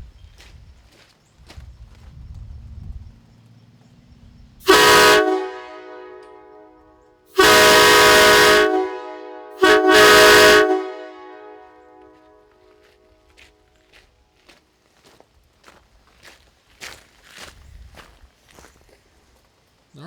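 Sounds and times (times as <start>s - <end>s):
train horn chord blasts: 4.6s - 13.7s.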